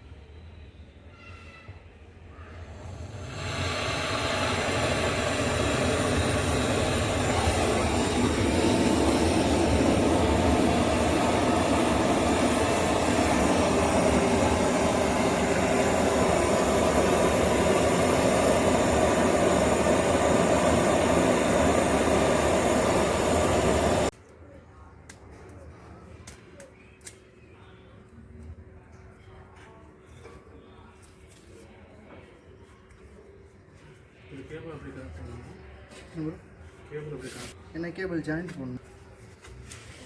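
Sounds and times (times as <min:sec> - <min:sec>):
machine motor running: 0:02.6 - 0:24.1.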